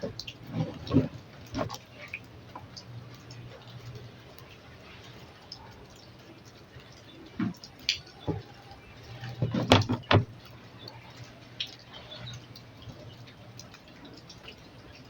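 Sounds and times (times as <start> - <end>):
small knocks and clicks of tools: 9.2 - 10.5.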